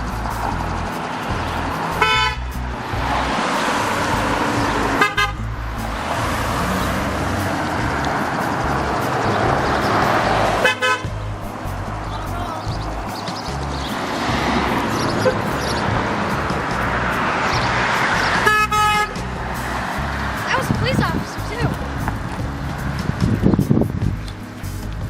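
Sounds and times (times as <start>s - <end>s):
car horns tooting: 1.9s - 5.9s, 6.6s - 19.4s.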